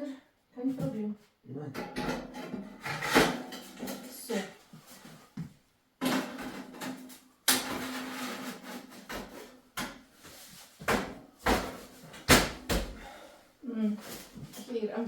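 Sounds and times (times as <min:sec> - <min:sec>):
fireplace scraping along floor: 0:02.0 - 0:05.4, 0:06.0 - 0:10.9.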